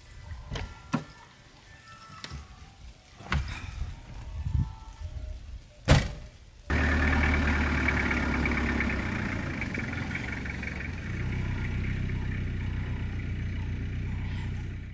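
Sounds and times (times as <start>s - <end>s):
vehicle engine starting and idling: 6.7s - 14.9s.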